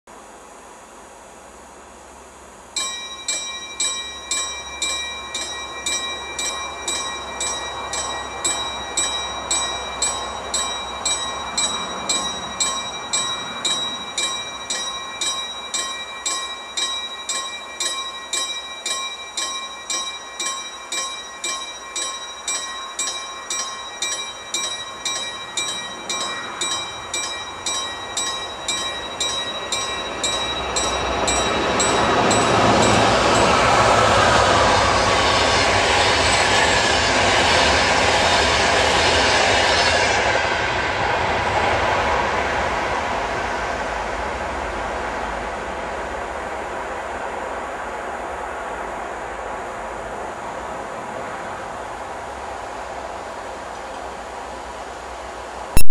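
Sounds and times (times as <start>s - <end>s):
level crossing warning bell: 2.8s - 42.1s
train rumble: 2.8s - 55.8s.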